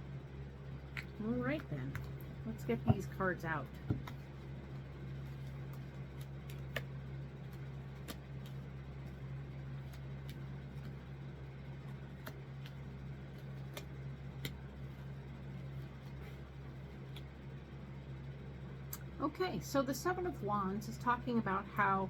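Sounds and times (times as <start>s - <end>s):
steady low hum: 0.0s - 22.0s
cards tapping on a table: 3.8s - 4.2s.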